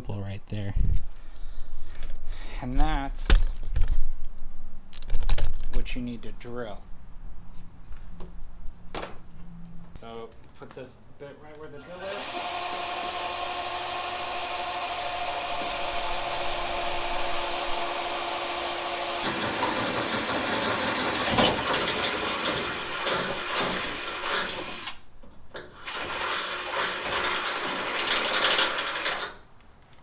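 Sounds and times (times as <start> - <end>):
electric drill boring: 12.0 - 25.0, 25.8 - 29.4.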